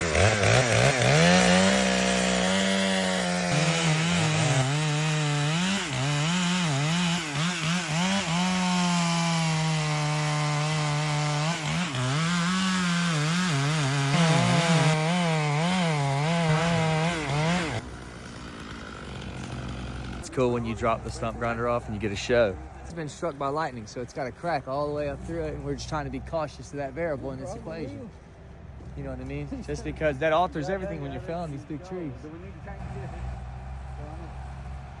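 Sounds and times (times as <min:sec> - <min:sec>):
chainsaw cutting wood: 0:00.0 - 0:22.0.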